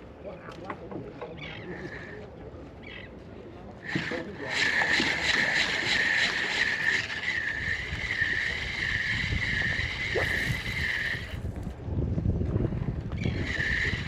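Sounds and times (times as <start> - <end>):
wind buffeting microphone: 5.8 - 14.0.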